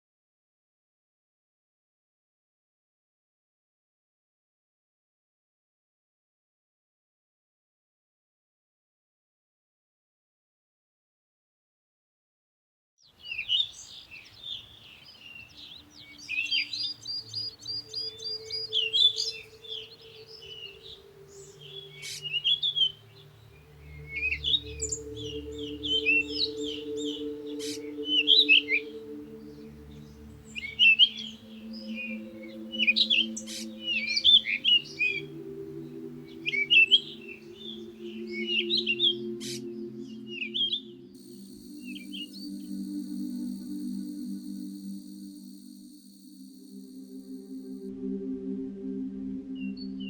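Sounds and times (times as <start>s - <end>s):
birds chirping and singing: 13.2s - 46.0s
low background music drone: 15.8s - 50.0s.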